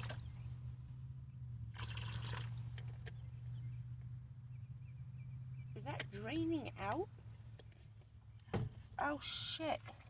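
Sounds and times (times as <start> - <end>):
water trickling and pouring: 0.0 - 0.3, 1.7 - 2.9.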